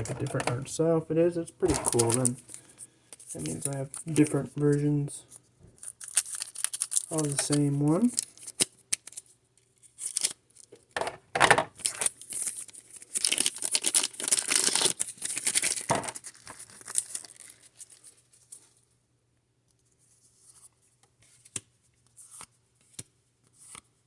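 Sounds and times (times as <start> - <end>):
foil wrapper tearing and crinkling: 1.8 - 4.2, 5.8 - 10.8, 11.7 - 18.3.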